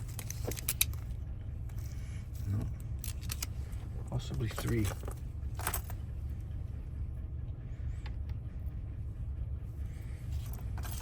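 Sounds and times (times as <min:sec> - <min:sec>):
steady low hum: 0:00.0 - 0:11.0
metal lock parts clicking: 0:03.0 - 0:03.6.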